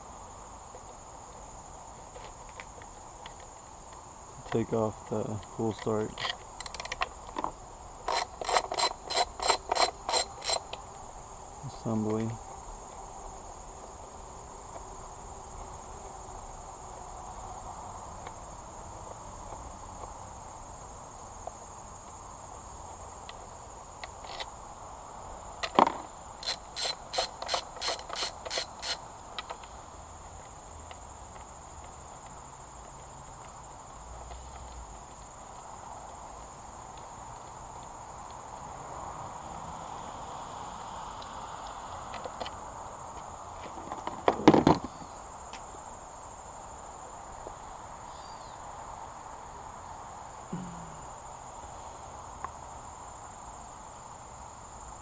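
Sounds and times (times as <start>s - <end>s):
insects chirring: 0.0s - 55.0s
sharp knock: 50.5s - 51.3s.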